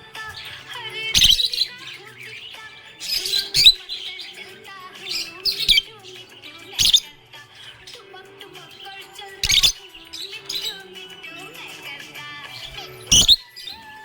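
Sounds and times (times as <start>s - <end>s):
quiet bird chatter: 0.0s - 14.0s
budgerigar chirping: 0.4s - 4.4s, 5.0s - 8.1s, 9.4s - 10.9s, 12.6s - 14.0s.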